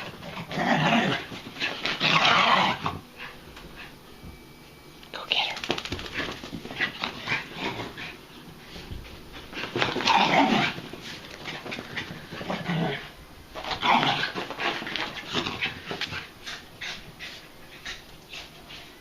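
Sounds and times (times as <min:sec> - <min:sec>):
dogs scuffling and grunting: 0:00.0 - 0:04.4, 0:05.4 - 0:19.0
dogs panting: 0:05.6 - 0:19.0.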